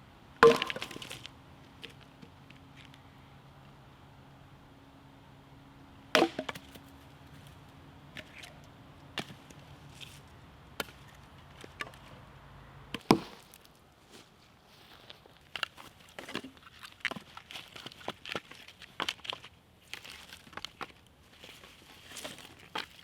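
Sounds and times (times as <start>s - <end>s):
axe chopping wood: 0.4s - 1.2s, 6.2s - 6.8s, 12.9s - 13.5s
wood knocks and cracks: 0.4s - 1.3s.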